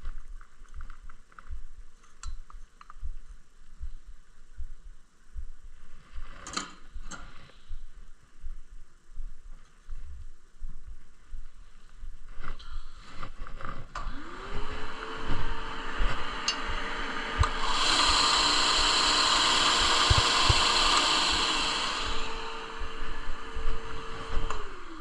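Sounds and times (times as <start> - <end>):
electric saw cutting wood: 14.0 - 25.0.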